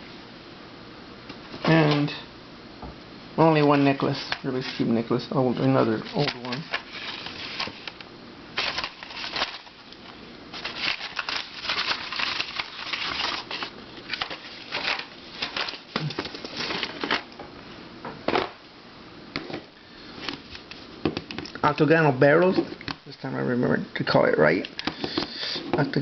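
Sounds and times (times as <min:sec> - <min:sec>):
packaging rustling and crinkling: 0:05.6 - 0:08.0, 0:08.6 - 0:17.4.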